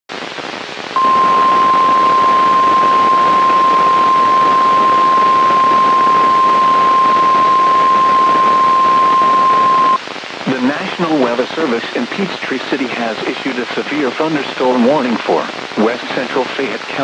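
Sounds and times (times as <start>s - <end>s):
steady warning alarm tone: 1.0s - 10.0s.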